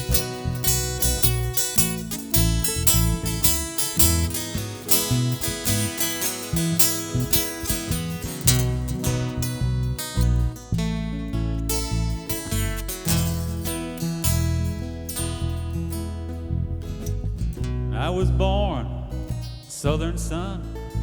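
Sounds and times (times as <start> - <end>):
bass line: 0.0 - 21.0
plucked string notes: 0.0 - 21.0
strummed acoustic guitar: 0.0 - 21.0.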